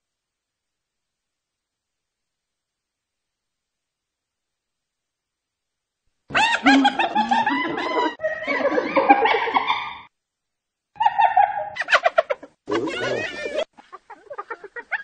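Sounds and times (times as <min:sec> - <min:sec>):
hyena laughing: 0:06.3 - 0:10.1, 0:11.0 - 0:15.0.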